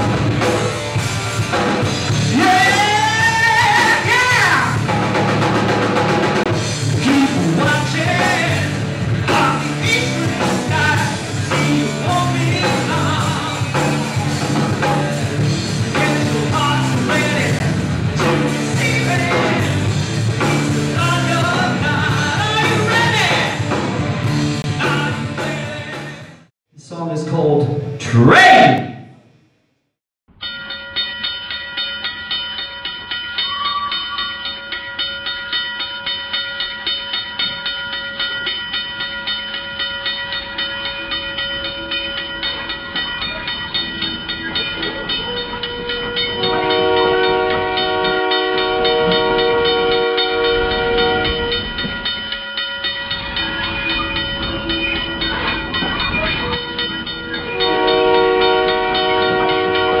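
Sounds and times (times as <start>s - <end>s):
train clickety-clack: 40.1s - 60.0s
multi-note train horn: 46.3s - 51.6s, 57.6s - 60.0s.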